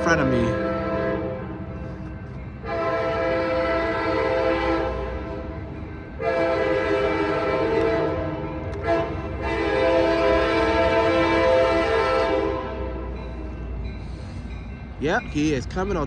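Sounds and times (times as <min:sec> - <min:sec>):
train low rumble: 0:00.0 - 0:16.0
locomotive air horn blasts: 0:00.3 - 0:01.5, 0:02.6 - 0:05.3, 0:06.2 - 0:13.0.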